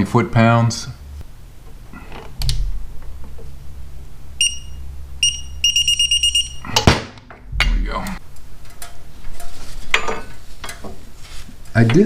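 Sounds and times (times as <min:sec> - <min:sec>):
low hum: 0:00.9 - 0:09.5
torque wrench beeping: 0:04.4 - 0:06.8.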